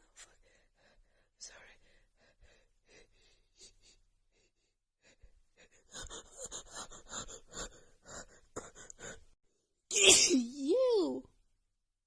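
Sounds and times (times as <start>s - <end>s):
woman breathing softly: 0.1s - 9.4s.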